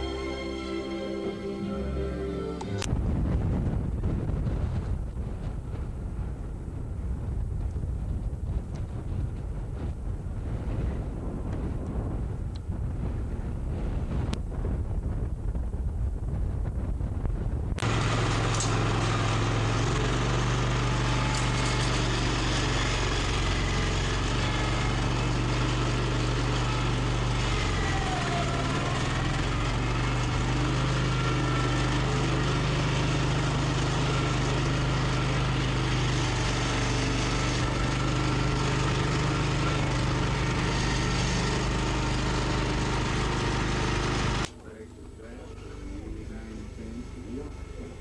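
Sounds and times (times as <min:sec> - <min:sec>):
engine-like mechanical hum: 0:01.2 - 0:48.0
wind on microphone: 0:02.9 - 0:17.8.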